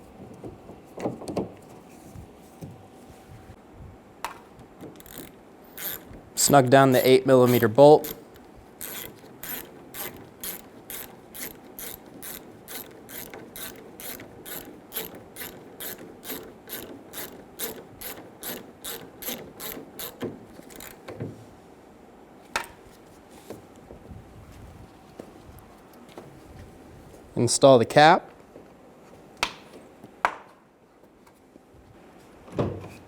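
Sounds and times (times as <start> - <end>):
hand ratchet clicking: 4.9 - 21.0.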